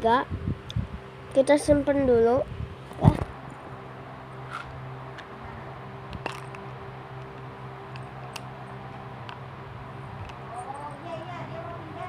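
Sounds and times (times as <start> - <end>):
steady low hum: 0.0 - 12.0
handling noises: 4.4 - 11.2.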